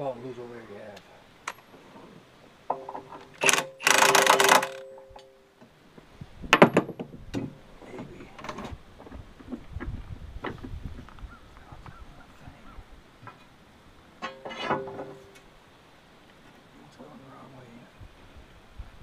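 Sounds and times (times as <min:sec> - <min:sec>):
loud metallic rattling: 0:02.7 - 0:05.2
metallic clanks with ringing: 0:02.7 - 0:05.4, 0:14.2 - 0:15.4.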